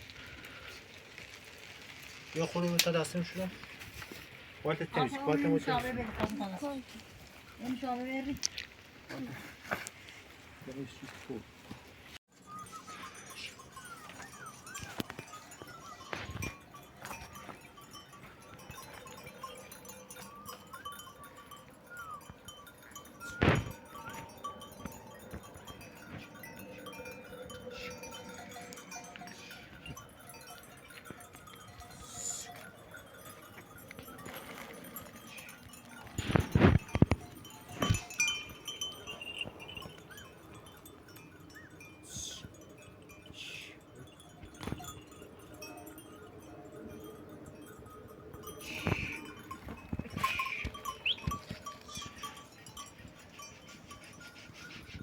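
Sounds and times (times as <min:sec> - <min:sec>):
small bells tinkling: 0:12.3 - 0:55.0.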